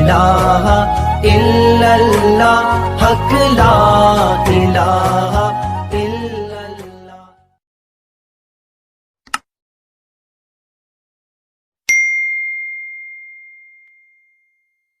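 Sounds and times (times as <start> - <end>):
short click: 9.3 - 9.5
bell-like ding: 11.9 - 15.0.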